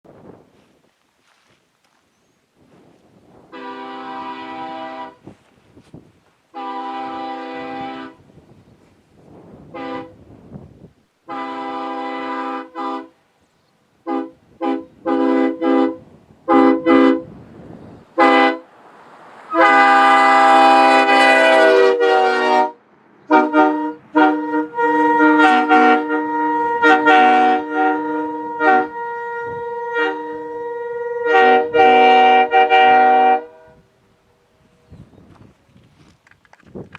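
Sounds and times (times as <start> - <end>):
train air horn toots and blasts: 3.5 - 5.5, 6.5 - 8.3, 9.7 - 10.3, 11.2 - 13.2, 14.0 - 17.4, 18.1 - 18.7, 19.5 - 35.0.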